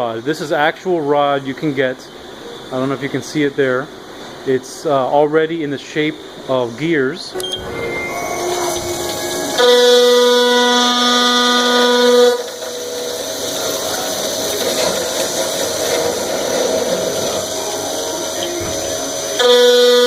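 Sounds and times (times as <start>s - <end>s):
machine whine: 6.2s - 20.0s
rough machine running noise: 7.4s - 20.0s.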